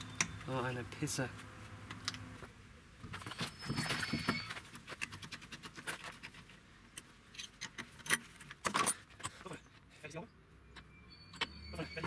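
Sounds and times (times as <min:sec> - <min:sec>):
metallic clinks of brake work: 0:00.0 - 0:00.6, 0:10.6 - 0:12.0.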